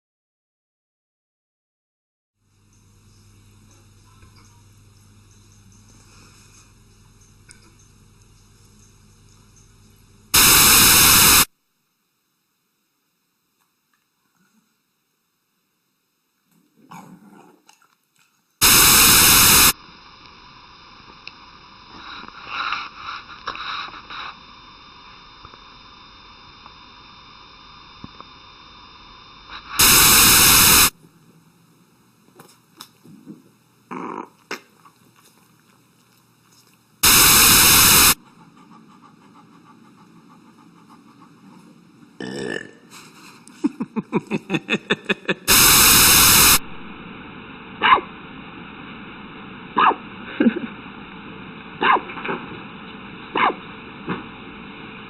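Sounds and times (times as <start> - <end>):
loud bursts of noise: 10.3 - 11.5, 18.6 - 19.8, 29.7 - 31.0, 37.0 - 38.2, 44.5 - 55.0
dogs burping: 16.8 - 17.9, 33.9 - 34.8, 38.4 - 43.1.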